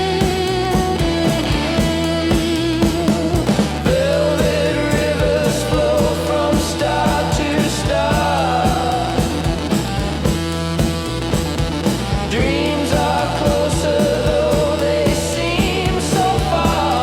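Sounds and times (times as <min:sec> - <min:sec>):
bass: 0:00.0 - 0:17.0
drum beat: 0:00.0 - 0:17.0
psychedelic rock song: 0:00.0 - 0:17.0
person singing: 0:03.9 - 0:09.8, 0:12.3 - 0:17.0.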